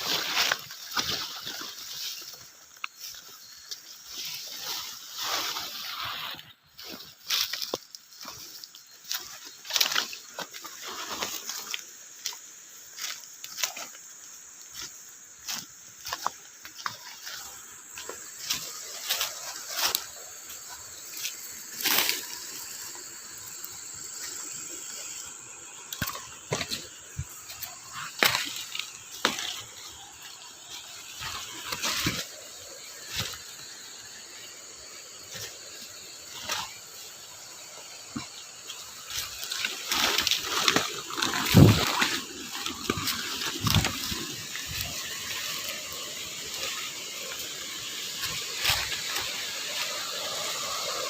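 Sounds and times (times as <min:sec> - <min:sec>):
steady background hiss: 0:00.0 - 0:51.0.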